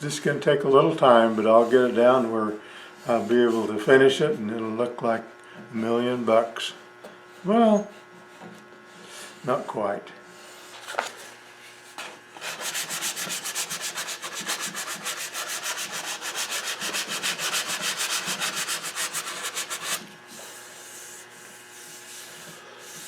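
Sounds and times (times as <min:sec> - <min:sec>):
wood being sanded: 0:01.0 - 0:02.4, 0:12.3 - 0:23.0
soft rubbing: 0:10.4 - 0:23.0.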